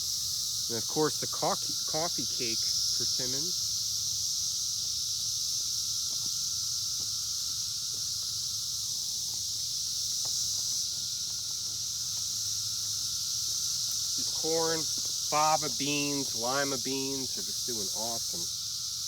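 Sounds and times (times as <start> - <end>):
high-pitched insect chorus: 0.0 - 19.0.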